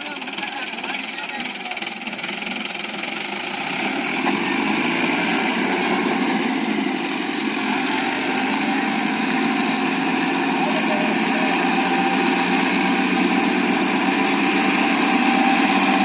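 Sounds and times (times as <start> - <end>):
tractor diesel engine running: 0.0 - 16.0.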